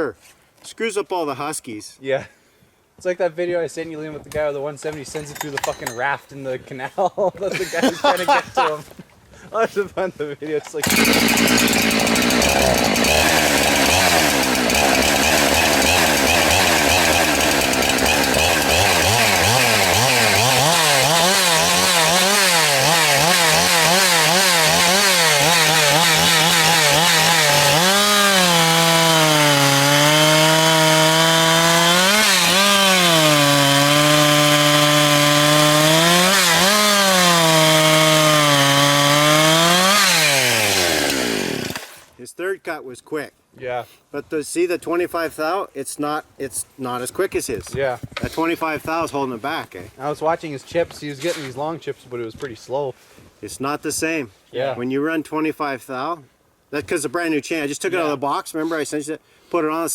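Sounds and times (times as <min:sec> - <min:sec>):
chainsaw cutting log: 0:10.8 - 0:42.2.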